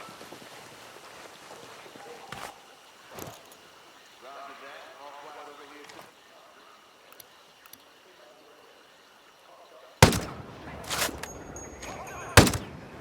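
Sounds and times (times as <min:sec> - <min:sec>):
rifle shots with echo: 0:10.0 - 0:11.3, 0:12.4 - 0:12.8
small rattle: 0:10.0 - 0:12.7.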